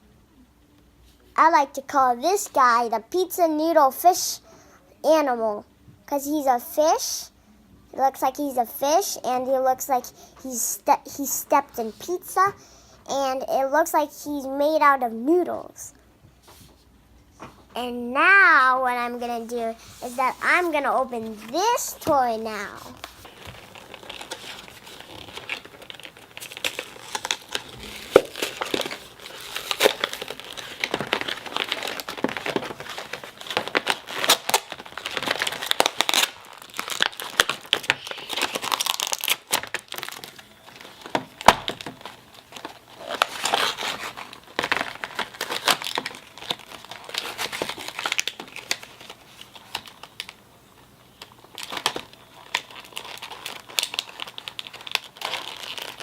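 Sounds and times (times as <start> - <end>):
packaging crinkling and tearing: 20.0 - 56.0.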